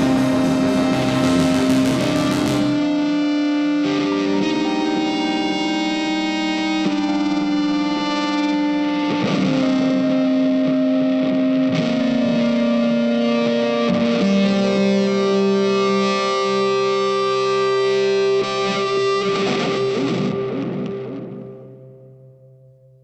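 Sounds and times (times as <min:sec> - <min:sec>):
distorted electric guitar chords: 0:00.0 - 0:22.9.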